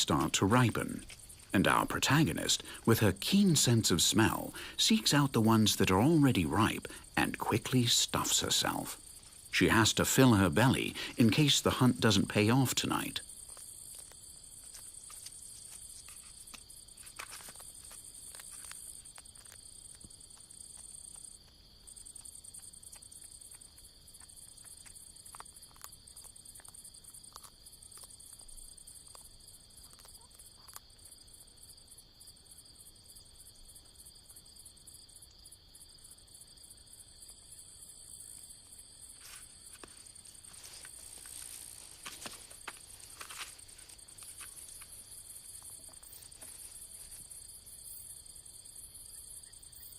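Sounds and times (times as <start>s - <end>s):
crickets chirring: 0.0s - 49.9s
faint clicks and rustles: 39.1s - 47.3s.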